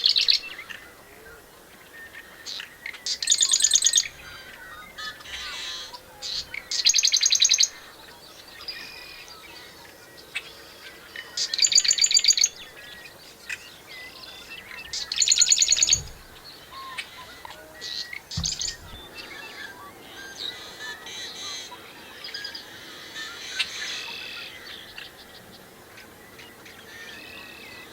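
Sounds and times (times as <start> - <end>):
faint bird chirps: 0.0 - 27.9
bird rattling trills: 14.4 - 17.5, 18.1 - 19.3.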